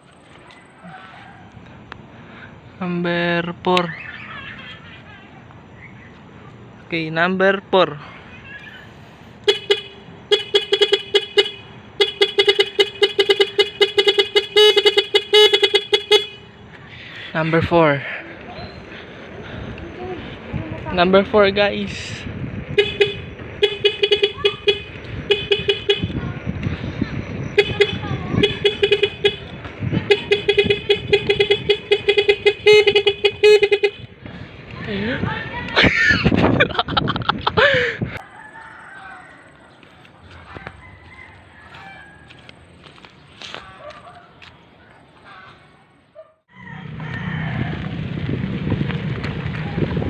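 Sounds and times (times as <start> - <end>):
electric bike horn toots: 9.4 - 16.6, 22.7 - 26.2, 27.4 - 34.2.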